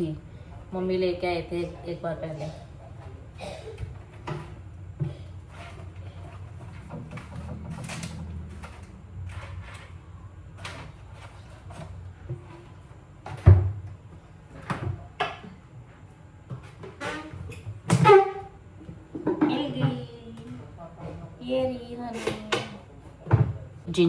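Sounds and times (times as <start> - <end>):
kitchen cupboards knocking and clattering: 3.8 - 8.8, 10.7 - 15.8, 16.5 - 20.2, 22.2 - 23.7.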